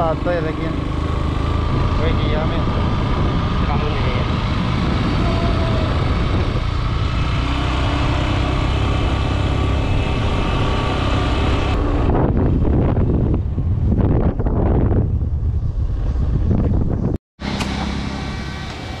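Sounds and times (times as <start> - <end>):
motor scooter engine running: 0.0 - 13.1
wind buffeting microphone: 0.0 - 17.2.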